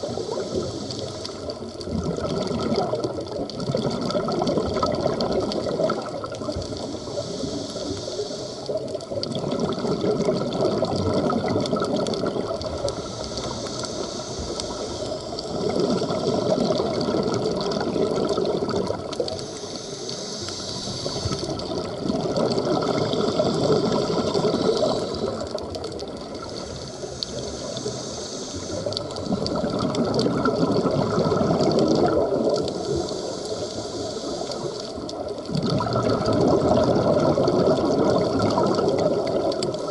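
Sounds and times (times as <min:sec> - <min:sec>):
regulator hiss: 0:00.0 - 0:01.6, 0:06.5 - 0:09.0, 0:12.8 - 0:16.6, 0:19.3 - 0:21.9, 0:22.9 - 0:25.6, 0:26.4 - 0:29.4, 0:32.6 - 0:35.2
underwater exhaled air bubbling: 0:00.0 - 0:39.9.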